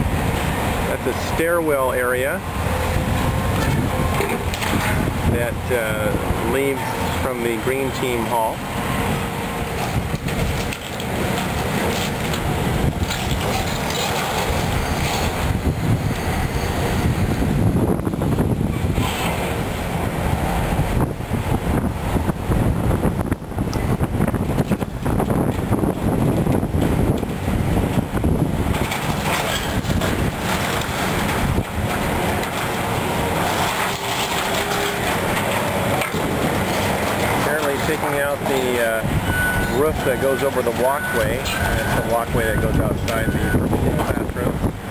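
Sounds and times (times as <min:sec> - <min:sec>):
heavy machinery rumbling: 0:00.0 - 0:44.9
debris crunching and clattering: 0:02.8 - 0:05.2, 0:09.7 - 0:15.6, 0:28.6 - 0:39.0.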